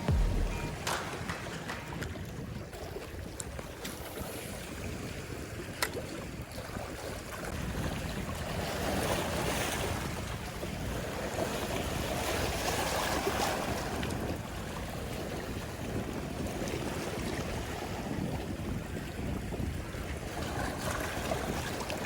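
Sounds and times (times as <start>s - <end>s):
sharp click: 0.0s - 2.1s
wind on microphone: 0.8s - 22.0s.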